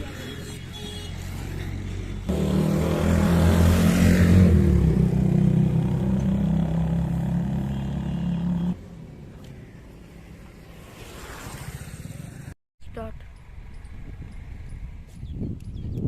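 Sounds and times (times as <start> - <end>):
vehicle engine running: 1.5 - 10.2.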